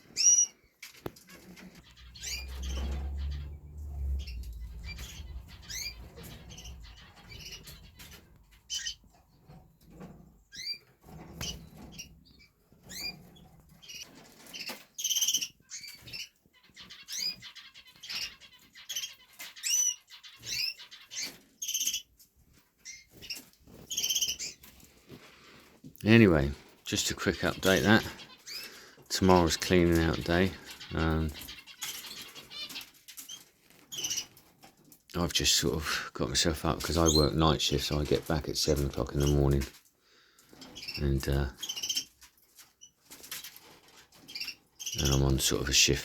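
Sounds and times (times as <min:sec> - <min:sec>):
rustle and fluttering: 0:00.0 - 0:16.3, 0:20.4 - 0:36.0, 0:37.7 - 0:46.0
finches and canaries chirping: 0:00.0 - 0:24.9, 0:26.0 - 0:46.0.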